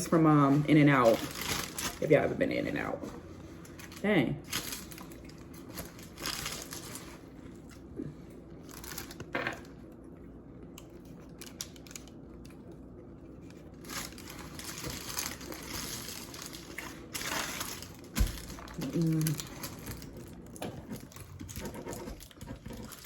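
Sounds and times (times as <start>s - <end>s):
paper wrapper crinkling: 0.1s - 7.7s, 8.6s - 9.3s, 13.3s - 21.6s.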